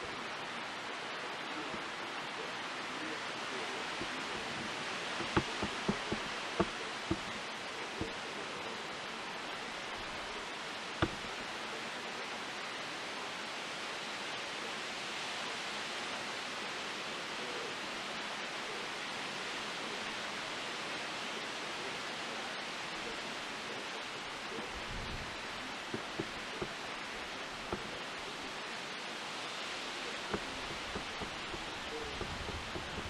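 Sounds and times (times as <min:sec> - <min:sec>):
wind rustling leaves: 0:00.0 - 0:33.0.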